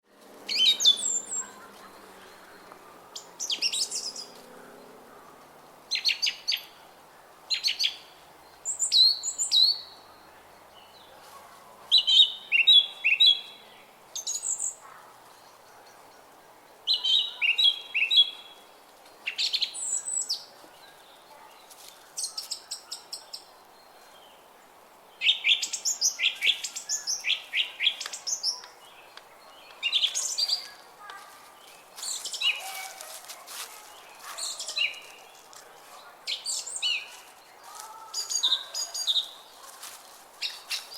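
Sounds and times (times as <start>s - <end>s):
faint background hiss: 0.1s - 40.9s
songbirds singing: 0.2s - 40.9s.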